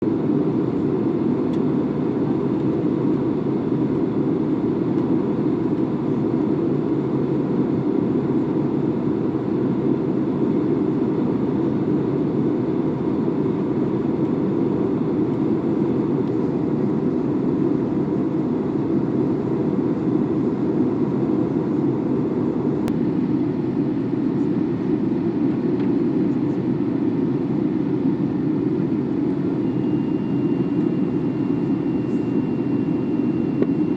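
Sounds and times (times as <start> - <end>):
airflow and engine noise: 0.0 - 33.9.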